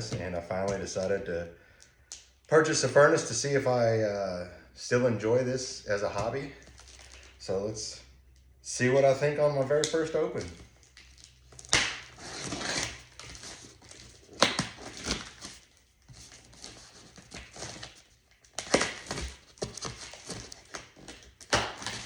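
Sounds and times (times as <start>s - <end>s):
packaging rustling: 6.3s - 7.4s, 9.7s - 22.0s.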